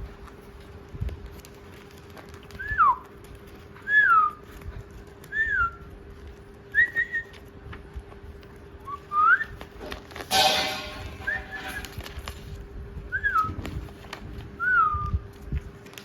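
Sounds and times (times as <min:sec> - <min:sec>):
parrot whistling: 0:11.1 - 0:11.9.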